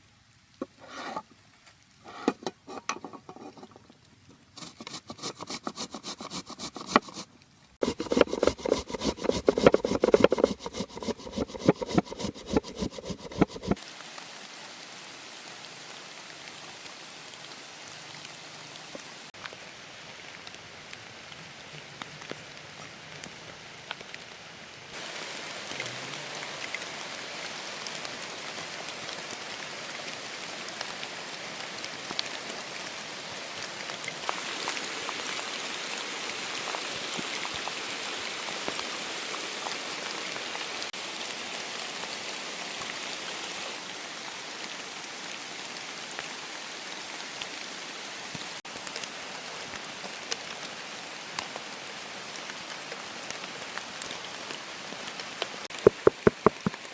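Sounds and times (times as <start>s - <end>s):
steady rain falling: 13.8s - 56.9s
drops ticking on surfaces: 55.8s - 56.9s.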